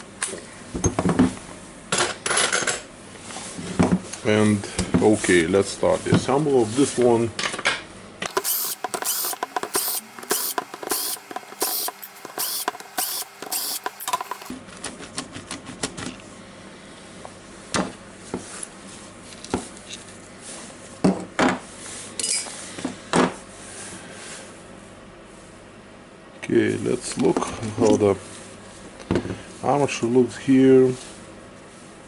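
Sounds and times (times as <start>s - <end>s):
clicking of tool parts: 8.3s - 14.5s.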